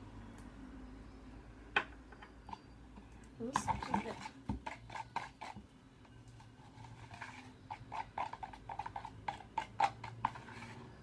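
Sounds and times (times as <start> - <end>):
spoon stirring thick mix: 2.3 - 11.0.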